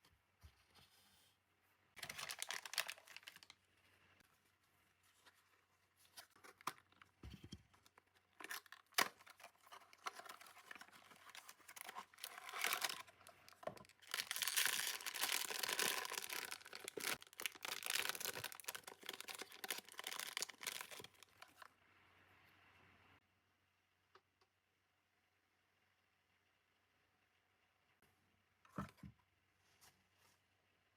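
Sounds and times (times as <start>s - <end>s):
packaging tearing and crinkling: 2.0s - 3.6s, 7.8s - 21.6s.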